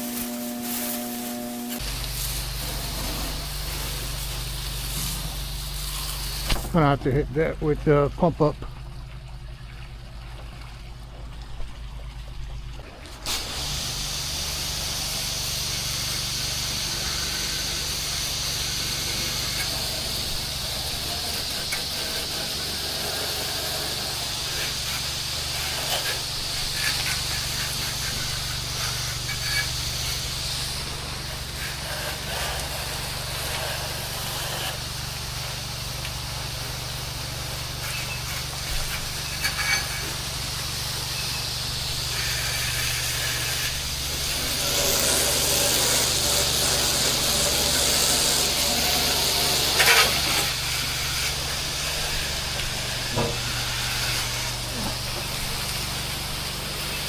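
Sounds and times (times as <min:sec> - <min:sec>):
pressure washer engine running: 0:00.0 - 0:08.2, 0:13.2 - 0:57.0
water spraying hiss: 0:00.0 - 0:08.6, 0:13.0 - 0:57.0.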